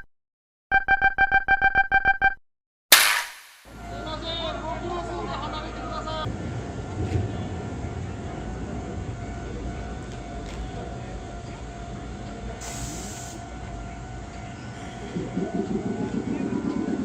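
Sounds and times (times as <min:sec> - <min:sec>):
electric train humming: 0:03.7 - 0:17.0
air brake hiss: 0:12.6 - 0:13.5.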